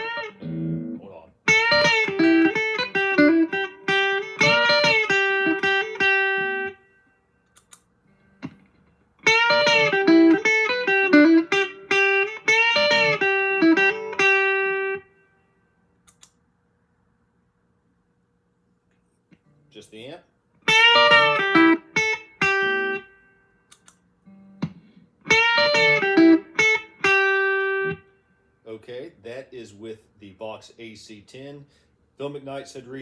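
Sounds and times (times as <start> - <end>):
electric guitar ringing notes: 0.0 - 7.1, 9.2 - 15.5, 20.7 - 23.4, 24.3 - 28.2.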